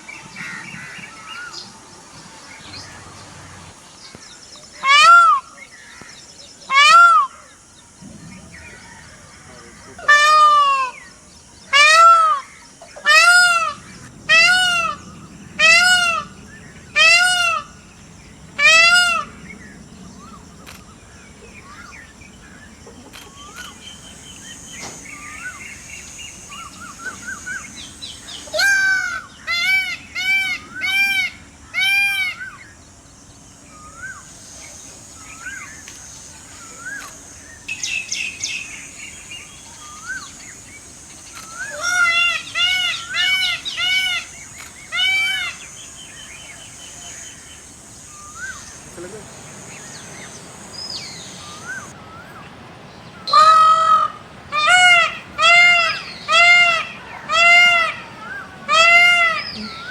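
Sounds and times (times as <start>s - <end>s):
peacock calling: 0.0s - 59.9s
small birds chirping: 19.2s - 53.4s.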